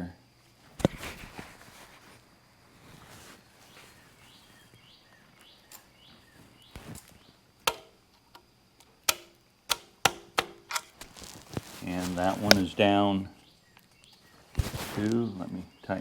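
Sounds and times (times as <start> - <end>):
bird chirping: 3.2 - 7.5, 11.2 - 16.0
sharp metallic taps: 7.7 - 7.9, 9.1 - 10.9.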